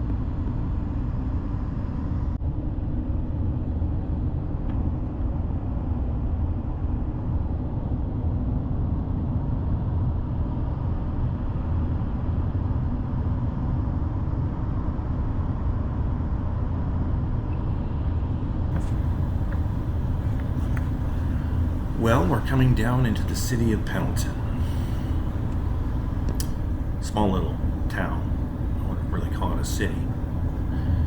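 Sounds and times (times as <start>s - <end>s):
truck cab road and engine drone: 18.8s - 31.0s.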